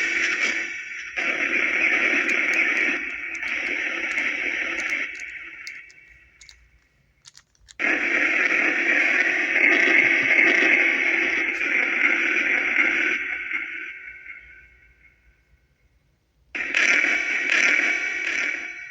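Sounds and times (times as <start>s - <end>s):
faint clicks: 2.2s - 7.9s.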